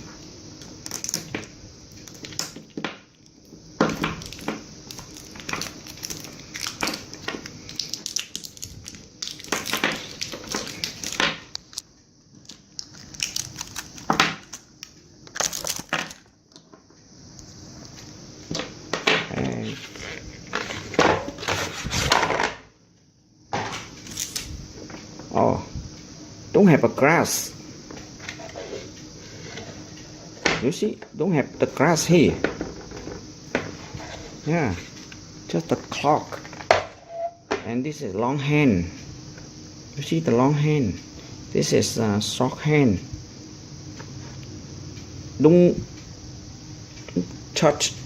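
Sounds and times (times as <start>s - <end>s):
plastic packaging crinkling: 4.2s - 11.8s, 12.4s - 16.3s.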